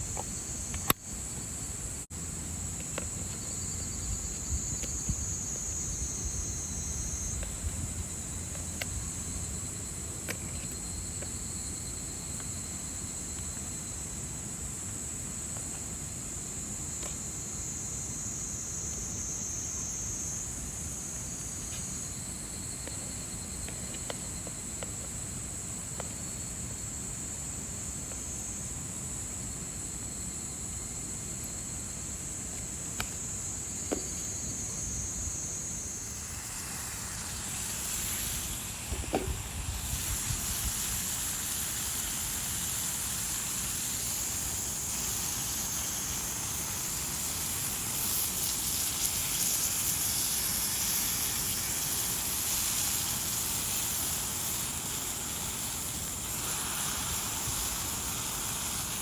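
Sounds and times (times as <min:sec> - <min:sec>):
insects singing: 0:00.0 - 0:27.0, 0:29.8 - 0:59.0
broad hiss: 0:00.0 - 0:59.0
light knocks: 0:38.9 - 0:39.4.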